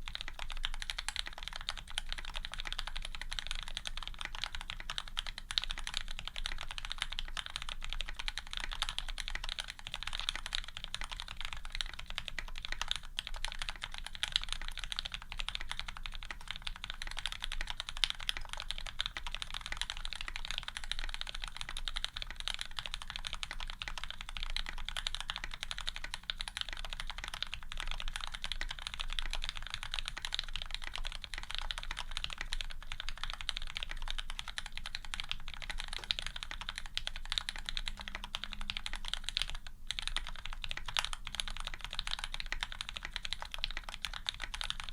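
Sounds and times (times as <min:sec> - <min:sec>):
fast typing on mechanical keyboard: 0:00.0 - 0:44.9.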